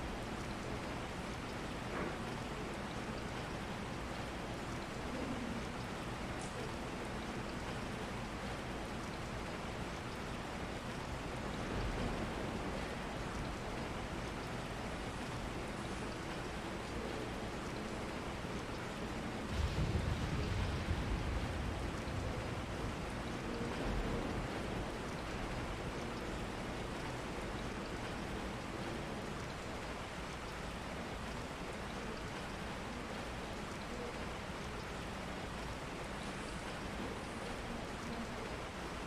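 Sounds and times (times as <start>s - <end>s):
rain falling: 0.0s - 39.0s
low rumble: 19.5s - 24.9s.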